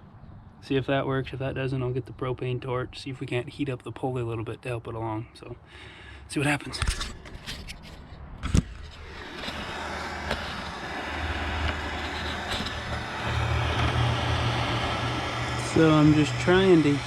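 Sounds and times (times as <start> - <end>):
propane torch hissing: 8.8 - 17.0.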